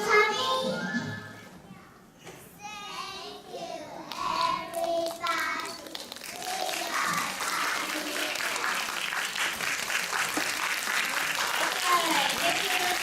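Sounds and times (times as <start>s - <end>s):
audience applause: 4.8s - 13.0s.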